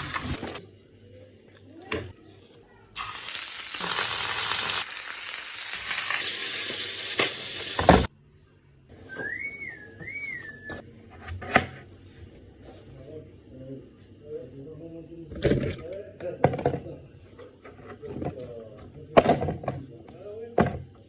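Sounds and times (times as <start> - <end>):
chicken sizzling in hot oil: 3.0 - 8.1.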